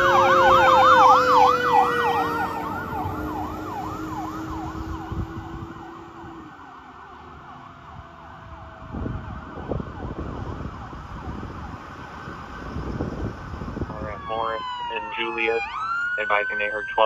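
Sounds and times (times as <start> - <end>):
fire engine siren yelping: 0.0 - 17.0
passing traffic noise: 0.0 - 17.0.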